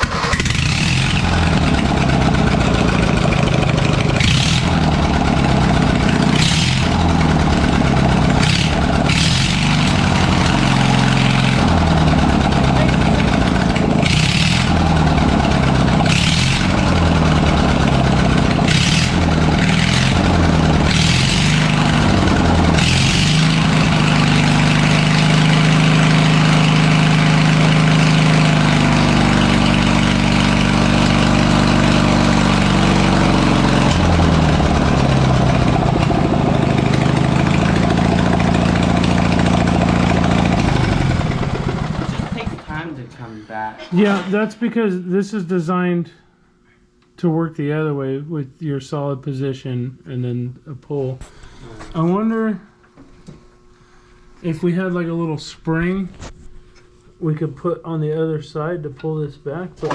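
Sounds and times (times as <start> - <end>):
riding lawn mower engine revving: 0.0 - 42.8.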